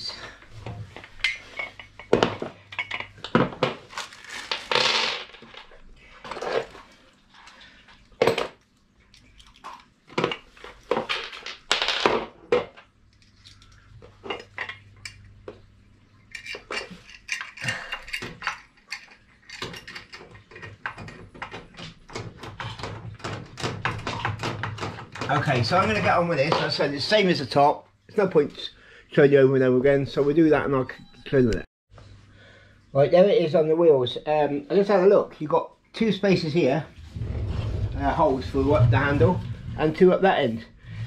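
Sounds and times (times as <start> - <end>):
metal parts clinking: 16.3 - 20.7.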